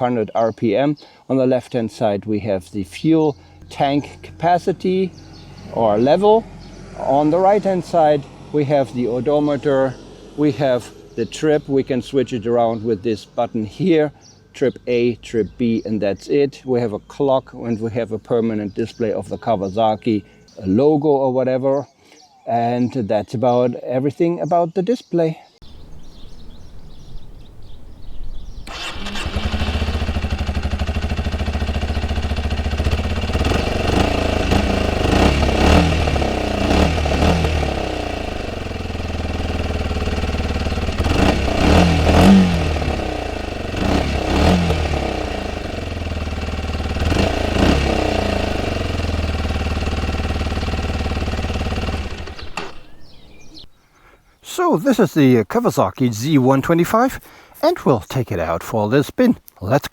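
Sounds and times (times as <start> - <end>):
motorcycle engine starting: 2.0 - 12.3, 25.6 - 53.7
motorcycle engine idling and revving: 2.6 - 12.8, 25.6 - 53.7.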